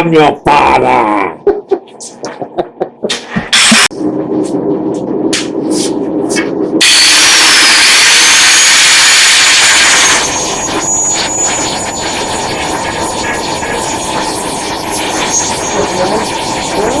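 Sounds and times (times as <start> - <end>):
angle grinder grinding steel: 6.8 - 17.0.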